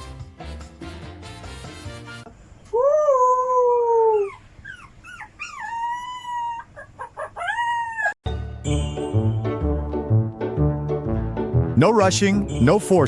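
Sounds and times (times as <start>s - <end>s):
dog howling and yelping: 2.8s - 8.2s.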